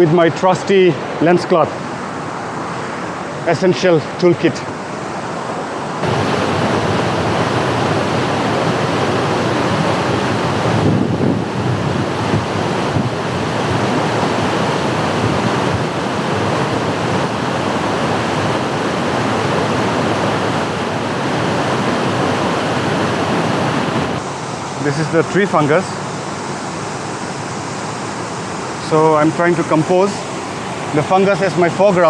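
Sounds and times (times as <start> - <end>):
waterfall rushing: 6.0 - 24.2.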